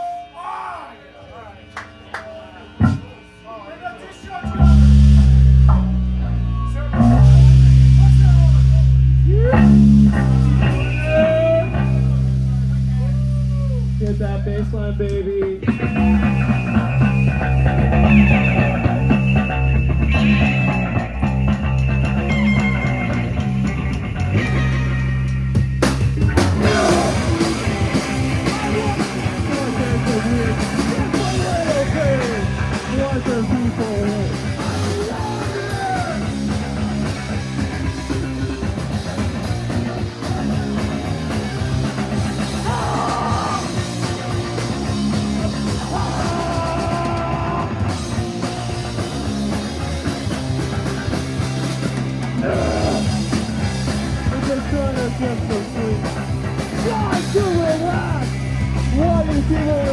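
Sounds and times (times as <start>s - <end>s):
drums: 0.0s - 59.9s
electric guitar: 1.3s - 3.5s, 4.4s - 59.9s
bass guitar: 2.7s - 3.4s, 4.4s - 59.9s
person singing: 26.3s - 36.5s, 42.5s - 48.0s, 52.4s - 53.3s, 54.2s - 59.9s.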